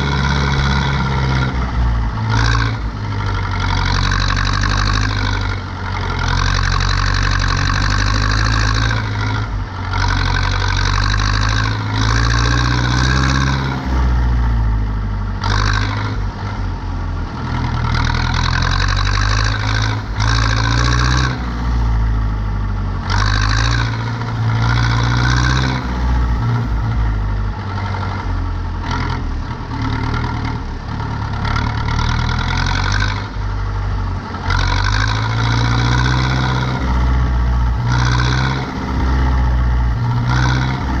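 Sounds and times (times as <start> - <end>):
tractor diesel engine running: 0.0 - 41.0
mechanical noise of hay turning: 2.3 - 9.3.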